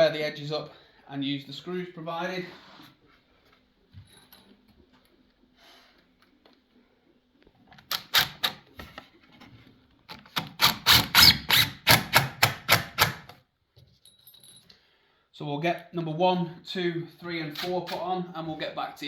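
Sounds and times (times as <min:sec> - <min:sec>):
screwdriver clicking: 0:07.8 - 0:08.6, 0:10.1 - 0:13.3.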